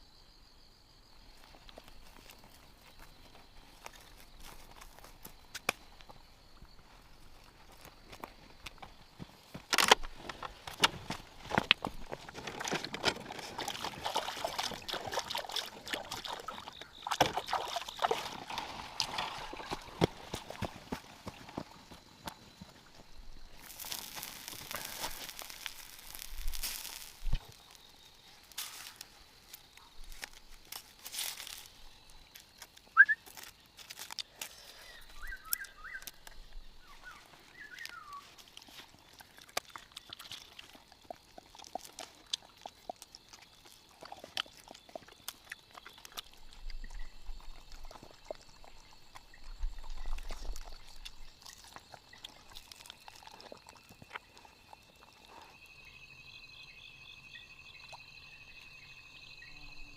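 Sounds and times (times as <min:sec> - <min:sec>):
high insect drone: 0:00.0 - 0:39.1, 0:45.6 - 0:59.9
bird chirps: 0:34.8 - 0:36.2, 0:36.8 - 0:38.3.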